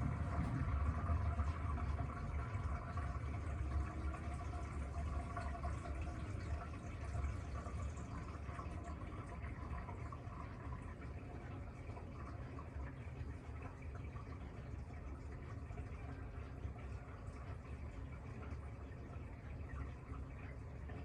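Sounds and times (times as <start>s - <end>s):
washing machine hum: 0.0s - 21.0s.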